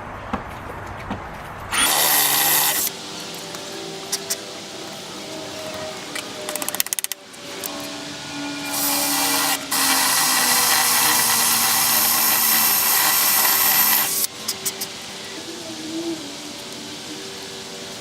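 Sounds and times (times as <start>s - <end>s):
power drill running under load: 1.7s - 3.0s, 8.6s - 14.3s.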